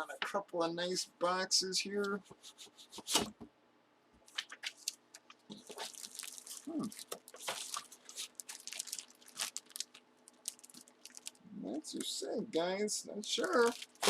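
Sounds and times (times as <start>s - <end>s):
plastic wrapping and cardboard tearing: 4.4s - 11.4s, 13.3s - 14.0s.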